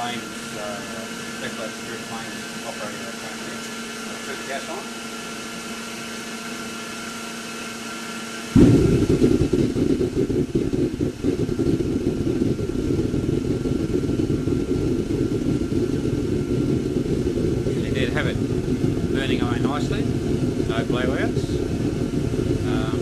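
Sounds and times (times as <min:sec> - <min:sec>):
burner low rumble: 0:00.0 - 0:07.2, 0:08.5 - 0:23.0
furnace blower humming: 0:00.0 - 0:23.0
gas burner igniting: 0:00.0 - 0:23.0.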